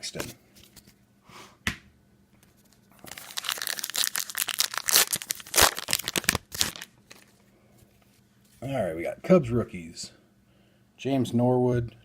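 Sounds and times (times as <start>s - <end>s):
wrapper tearing and crinkling: 3.0s - 7.3s.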